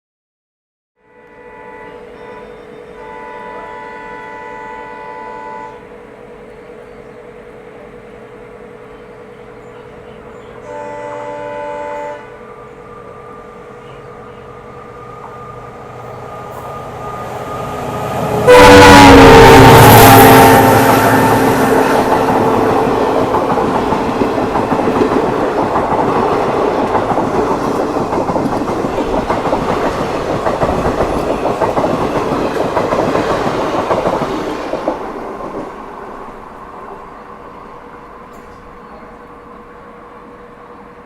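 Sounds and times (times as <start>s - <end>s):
locomotive horn: 1.0s - 6.0s, 10.6s - 12.5s, 18.3s - 23.3s
train rumble: 1.2s - 41.0s
train wheels clattering over rail joints: 22.1s - 35.1s.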